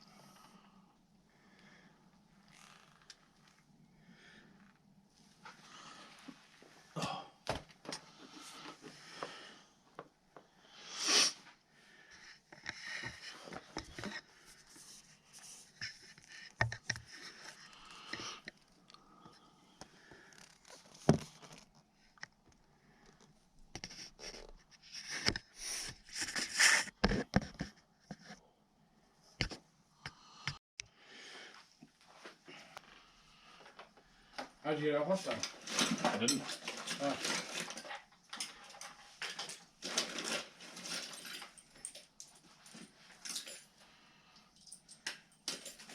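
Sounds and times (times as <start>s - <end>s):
rustling scrapes: 23.8s - 27.0s.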